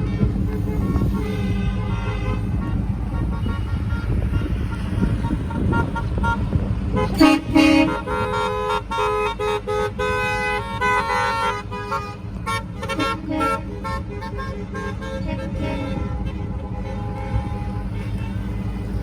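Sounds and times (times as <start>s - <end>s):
car horns honking: 0.0s - 19.0s
low rumble of traffic: 0.0s - 19.0s.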